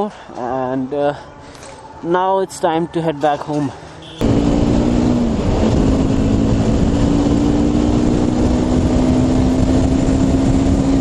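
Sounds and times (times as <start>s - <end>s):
motorcycle engine running: 4.0s - 11.0s.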